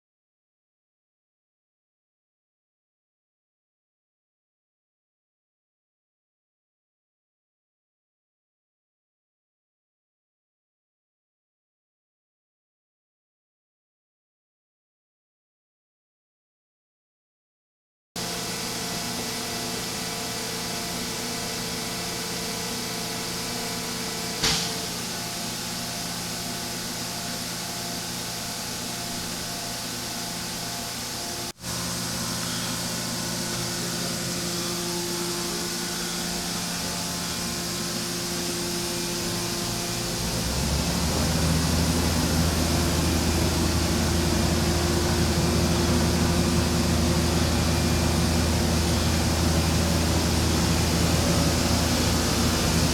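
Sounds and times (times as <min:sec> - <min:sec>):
machining center humming: 0:18.2 - 0:52.9
loud low hum: 0:30.2 - 0:52.9.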